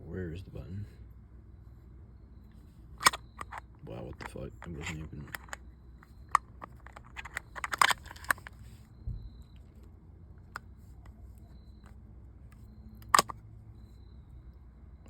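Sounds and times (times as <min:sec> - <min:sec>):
sharp clicks of hub parts: 0:13.0 - 0:13.4.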